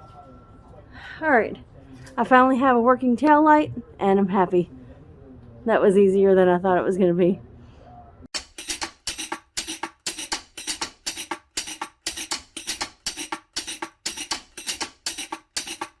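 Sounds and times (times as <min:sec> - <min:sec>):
music with percussive beat: 0:08.3 - 0:16.0.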